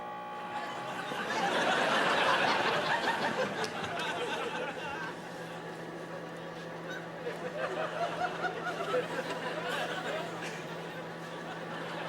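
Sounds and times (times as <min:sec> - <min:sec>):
steady hum: 0:00.0 - 0:12.0
audience laughing: 0:00.5 - 0:12.0.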